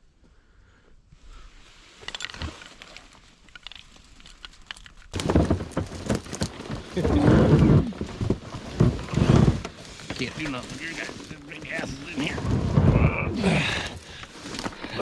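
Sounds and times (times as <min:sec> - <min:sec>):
dense rustling and knocking: 0:04.7 - 0:15.0.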